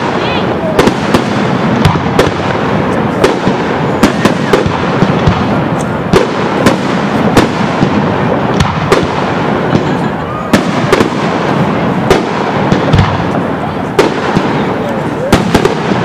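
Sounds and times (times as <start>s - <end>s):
continuous din: 0.0s - 16.0s.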